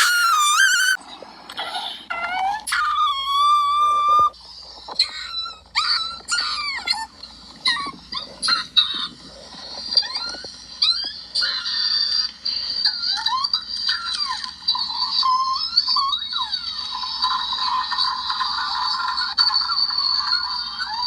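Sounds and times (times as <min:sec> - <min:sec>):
squeaky cartoon cries: 0:00.0 - 0:01.0.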